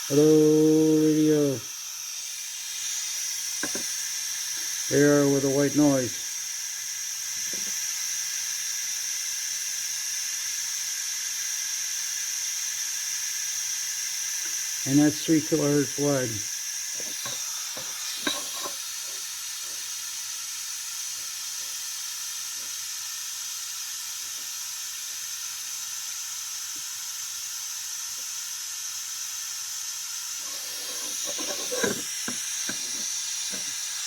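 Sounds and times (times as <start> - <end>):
white noise hiss: 0.0 - 10.5, 14.4 - 19.8.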